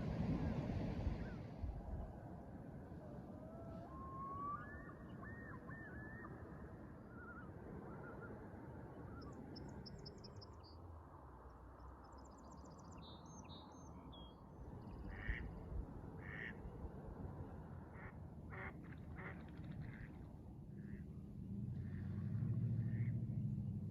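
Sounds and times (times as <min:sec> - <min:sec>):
ducks quacking: 0:22.9 - 0:23.1.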